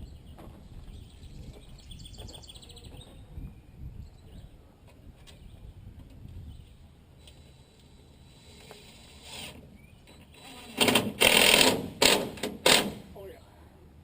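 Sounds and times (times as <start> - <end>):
songbird trill: 0.0 - 4.6, 9.7 - 10.4
low outdoor rumble: 0.0 - 14.0.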